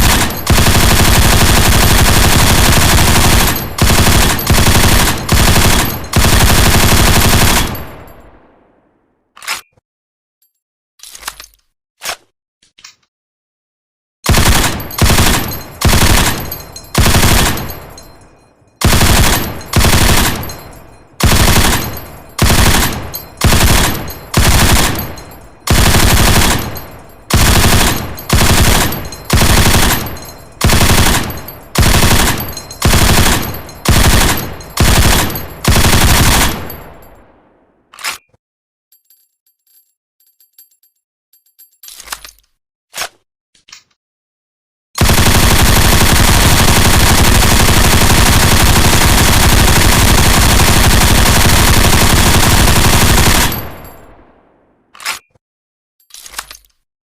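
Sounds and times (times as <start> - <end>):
machine gun firing bursts: 0.0 - 8.1, 14.3 - 18.1, 18.8 - 37.0, 45.0 - 54.2
gunfire echo: 0.0 - 9.0, 14.3 - 18.2, 18.8 - 37.8, 45.0 - 54.7.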